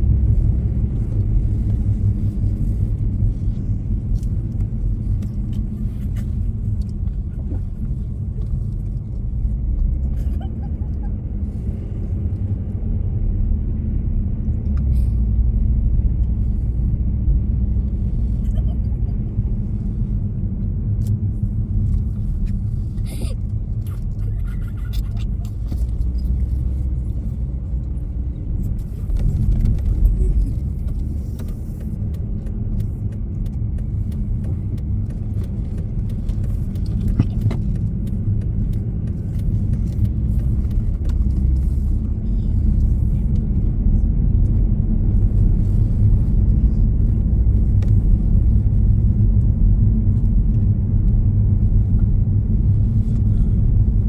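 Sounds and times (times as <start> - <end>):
vehicle rumble: 0.0 - 54.0
faint clicks and rattles: 21.0 - 43.7.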